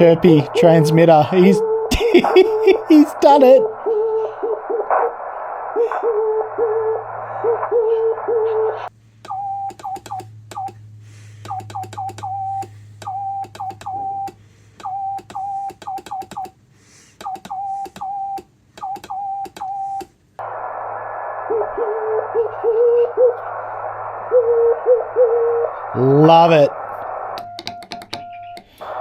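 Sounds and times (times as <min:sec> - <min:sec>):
faint low chirping signal: 0:00.0 - 0:16.6, 0:17.2 - 0:29.0
receiver hiss: 0:00.0 - 0:27.7, 0:28.6 - 0:29.0
chirping morse code tone: 0:00.4 - 0:04.9, 0:06.1 - 0:10.8, 0:11.4 - 0:16.6, 0:17.2 - 0:20.1, 0:27.4 - 0:29.0.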